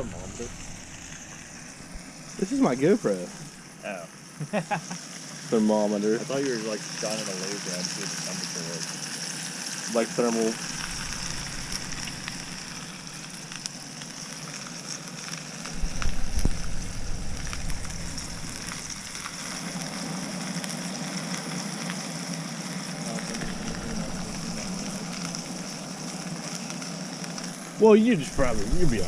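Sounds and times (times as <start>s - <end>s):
low rumble: 0.0s - 3.8s, 10.5s - 14.6s, 15.6s - 20.0s, 23.1s - 26.4s, 28.2s - 29.0s
fish sizzling in a pan: 0.0s - 29.0s.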